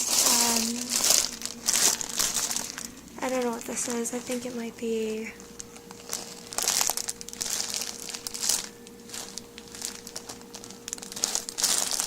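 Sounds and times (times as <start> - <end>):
bag crinkling: 0.0 - 4.6, 5.2 - 12.0.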